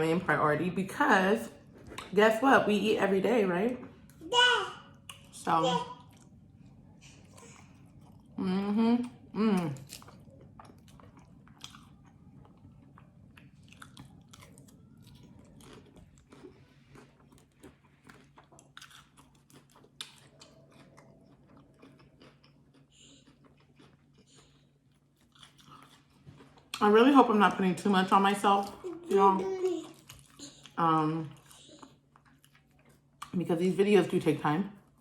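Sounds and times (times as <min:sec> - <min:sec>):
chewing and mouth sounds: 0:01.6 - 0:02.2, 0:04.9 - 0:27.2, 0:28.3 - 0:33.4.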